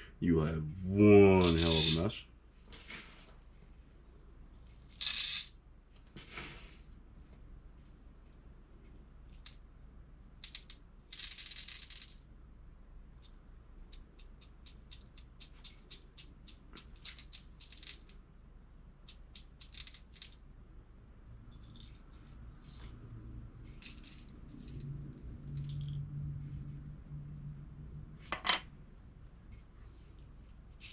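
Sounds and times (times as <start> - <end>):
shotgun pellets clicking and rattling: 1.4 - 2.1, 4.6 - 5.5, 10.4 - 12.2, 13.2 - 18.2, 19.0 - 20.4, 23.8 - 26.0.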